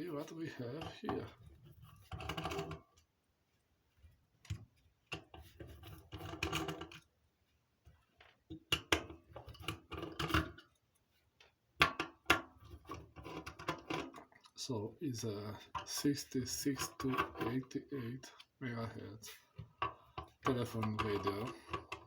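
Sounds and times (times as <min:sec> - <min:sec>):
hand tools clicking and scraping: 0:00.1 - 0:02.8, 0:11.8 - 0:14.3, 0:15.4 - 0:18.5, 0:19.2 - 0:22.0.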